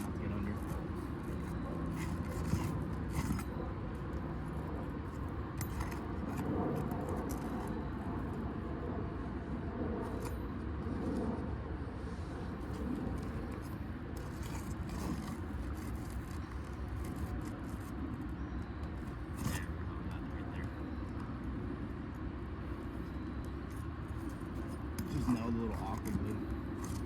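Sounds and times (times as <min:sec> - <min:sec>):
metallic clicks and scrapes: 0:00.0 - 0:03.6, 0:05.6 - 0:07.7, 0:12.8 - 0:17.9
steady low rumble: 0:00.0 - 0:27.0.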